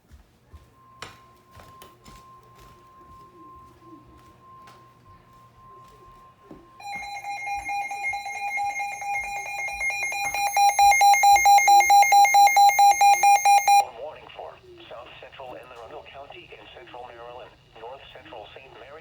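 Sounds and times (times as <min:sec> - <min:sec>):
faint steady alert tone: 0:00.8 - 0:13.9
electronic alarm beeping rapidly: 0:01.3 - 0:13.9.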